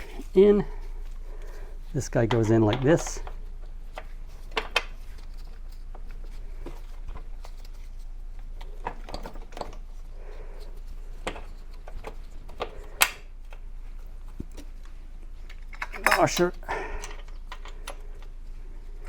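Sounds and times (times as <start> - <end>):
small metal parts clicking: 15.5 - 18.3.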